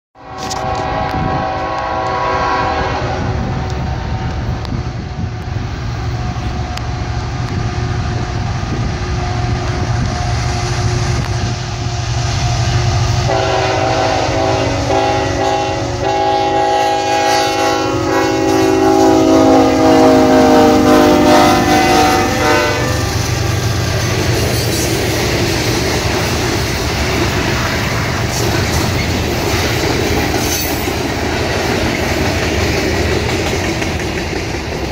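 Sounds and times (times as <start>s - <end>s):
train horn blasts: 0.2s - 4.3s, 13.2s - 23.4s
diesel locomotive engine rumbling: 0.2s - 34.9s
rattle of train cars rolling: 22.4s - 34.9s.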